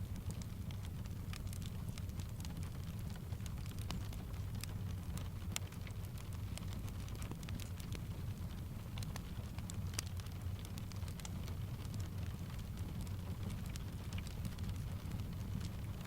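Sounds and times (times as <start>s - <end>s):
low steady rumble: 0.0s - 16.0s
steady rain: 0.0s - 16.0s
wood fire crackling: 0.0s - 16.0s.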